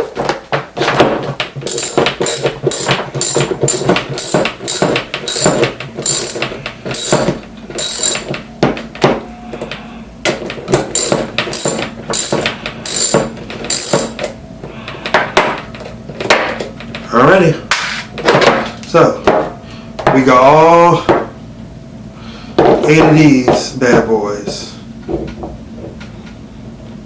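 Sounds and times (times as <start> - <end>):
sharp metallic clicks of hand tool: 1.7 - 8.3, 11.0 - 14.2.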